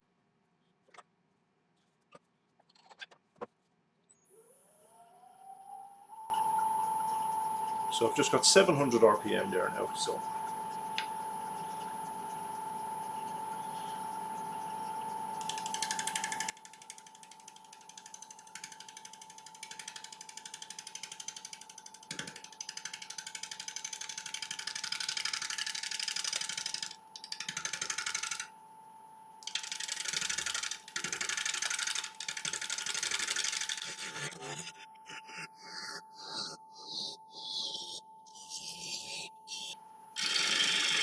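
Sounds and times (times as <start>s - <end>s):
wood lathe whining: 15.4s - 28.5s, 29.4s - 36.0s, 39.6s - 41.0s
gouge chattering on wood: 29.4s - 35.4s.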